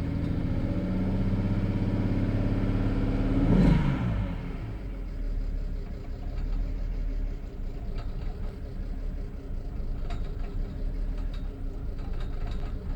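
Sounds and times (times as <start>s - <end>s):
faint engine ticks: 4.9s - 12.9s.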